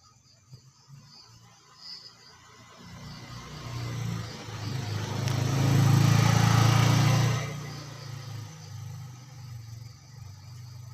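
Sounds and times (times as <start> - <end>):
vehicle passing by: 1.3 - 10.9.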